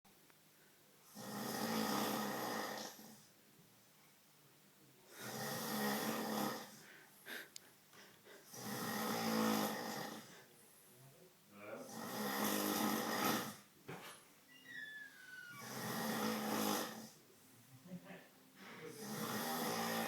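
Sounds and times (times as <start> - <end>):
man snoring: 1.1 - 3.2, 5.1 - 7.4, 8.4 - 10.4, 11.8 - 13.6, 15.5 - 17.2, 18.8 - 20.0.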